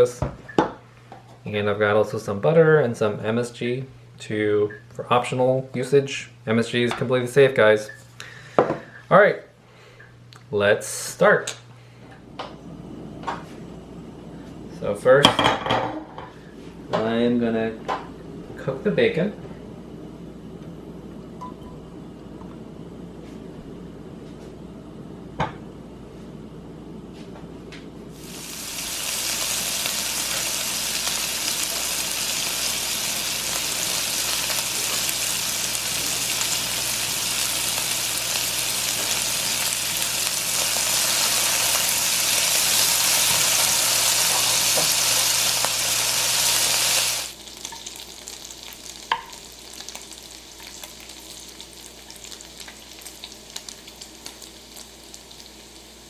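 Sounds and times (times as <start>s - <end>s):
bacon sizzling in a pan: 28.2s - 56.0s.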